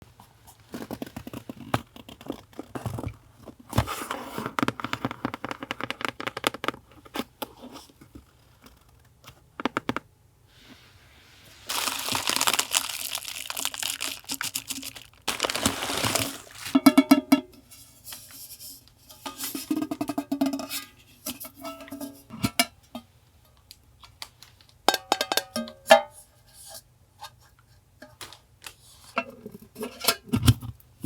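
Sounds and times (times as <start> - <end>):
paper and packaging crinkling: 11.4 - 16.9.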